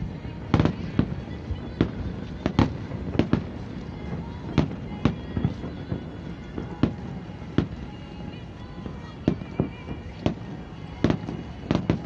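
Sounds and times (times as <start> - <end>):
fireworks bangs: 0.0 - 12.0.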